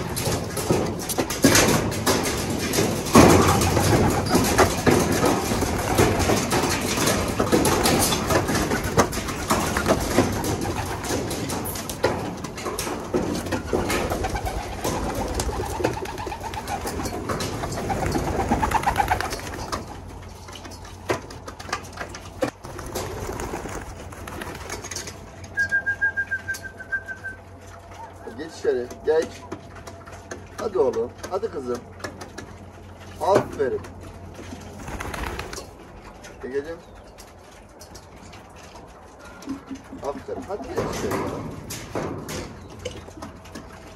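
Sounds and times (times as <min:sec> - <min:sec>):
pigeons cooing: 0:00.0 - 0:20.3
clattering and rustling: 0:00.0 - 0:25.6, 0:29.2 - 0:43.9
short high whistle-like note: 0:25.6 - 0:27.4.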